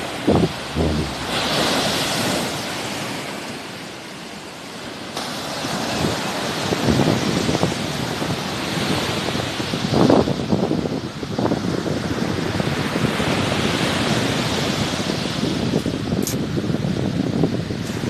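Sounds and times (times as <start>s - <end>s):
wind buffeting microphone: 0.0s - 2.4s
sea waves washing ashore: 0.0s - 9.9s.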